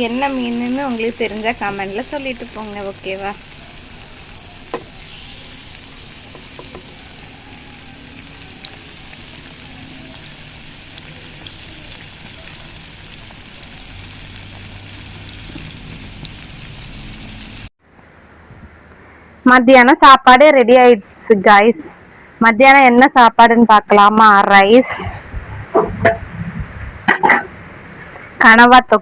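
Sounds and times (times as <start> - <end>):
fish sizzling in hot oil: 0.0 - 17.7.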